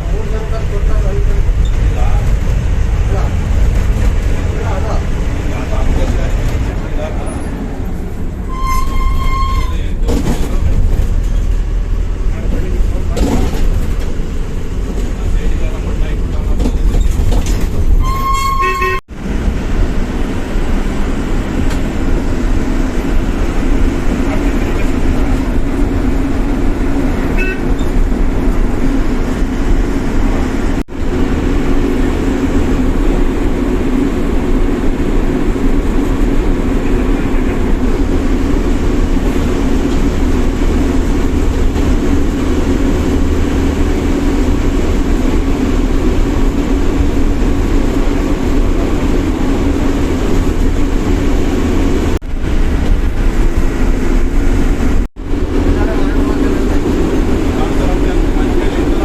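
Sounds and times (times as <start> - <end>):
bus engine and road noise: 0.0 - 59.0
vehicle horn toot: 8.5 - 9.8, 18.0 - 19.0, 27.3 - 27.8.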